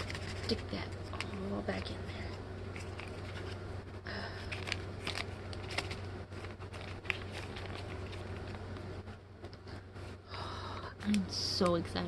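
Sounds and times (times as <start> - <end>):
plastic bag crinkling: 0.0 - 8.8
low hum: 0.0 - 12.0.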